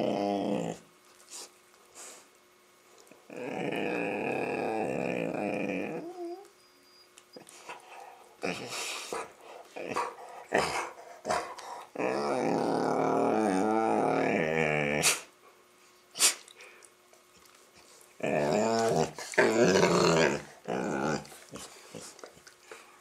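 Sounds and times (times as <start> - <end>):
dogs play-growling: 0.0 - 0.9, 3.1 - 6.5, 7.5 - 15.2, 17.8 - 23.0.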